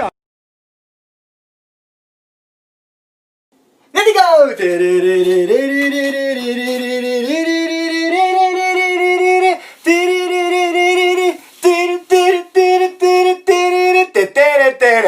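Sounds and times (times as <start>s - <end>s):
person singing held notes: 4.0s - 14.1s.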